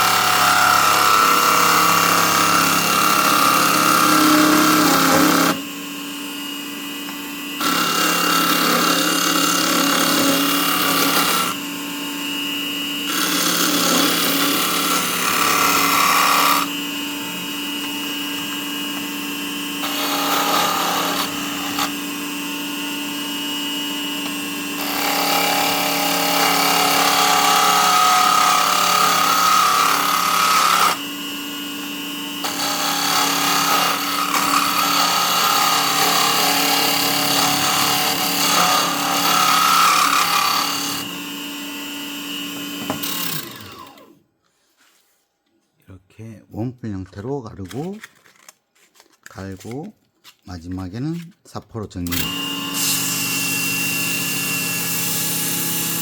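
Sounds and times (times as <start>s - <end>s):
lathe motor hum: 0.0s - 44.1s
turning tool cutting wood: 0.0s - 44.2s, 52.0s - 56.0s.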